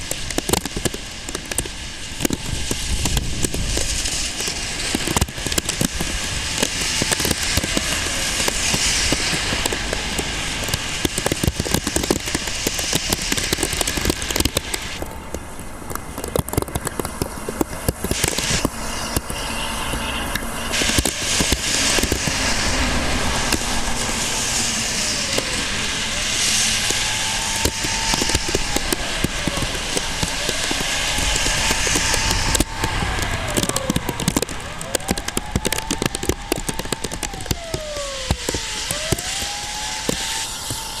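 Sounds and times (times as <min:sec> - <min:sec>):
wind and rain buffeting microphone: 0:00.0 - 0:41.0
faint rising and falling tones: 0:18.4 - 0:41.0.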